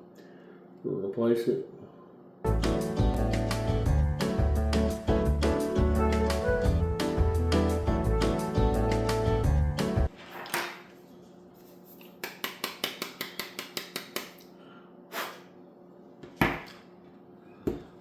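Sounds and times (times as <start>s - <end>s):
music: 2.4s - 10.1s.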